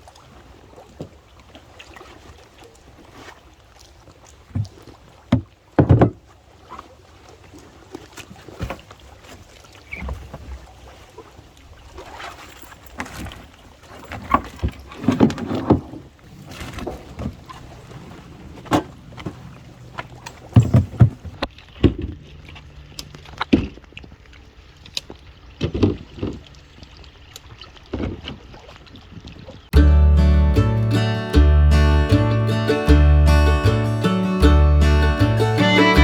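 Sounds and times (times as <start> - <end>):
knocks and thumps of gear: 20.5 - 22.1.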